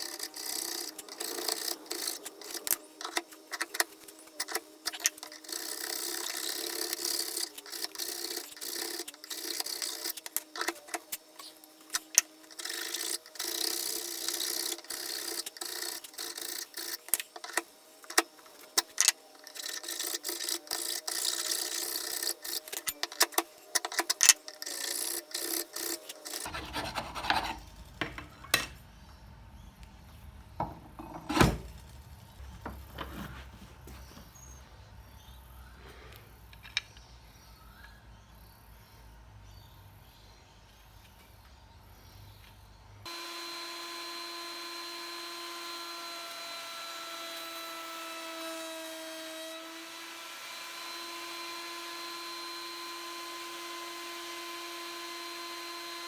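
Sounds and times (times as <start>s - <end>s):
hand scraping on metal: 26.2s - 28.7s.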